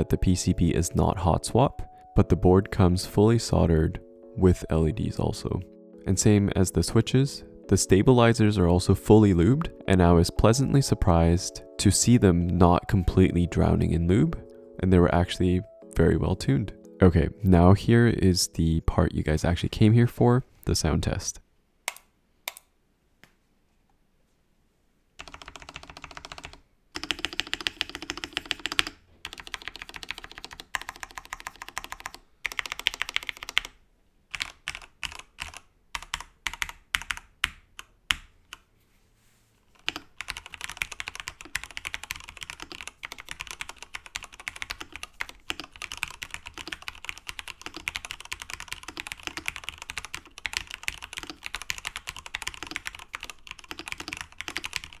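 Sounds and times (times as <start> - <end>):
typing on mechanical keyboard: 25.2 - 38.6, 39.7 - 55.0.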